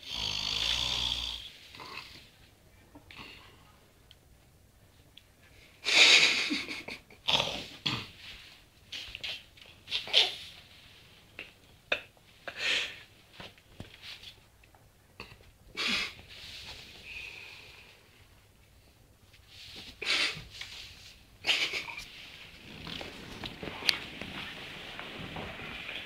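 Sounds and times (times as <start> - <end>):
dog snoring: 0.0 - 2.1.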